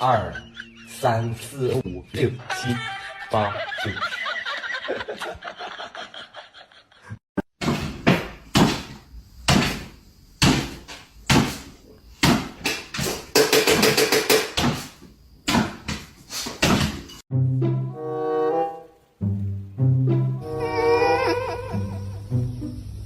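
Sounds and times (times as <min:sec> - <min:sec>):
sharp knocks: 0:07.6 - 0:17.2.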